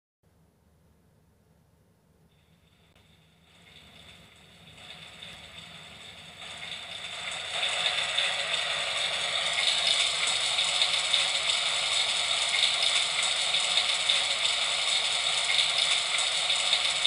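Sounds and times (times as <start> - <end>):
rain hissing: 3.4 - 17.0.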